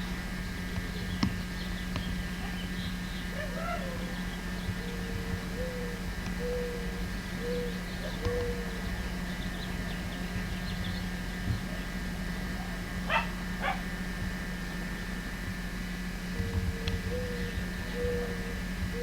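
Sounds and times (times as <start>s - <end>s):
dove cooing: 0.0s - 19.0s
steady low hum: 0.0s - 19.0s
small dog yipping: 13.1s - 13.8s.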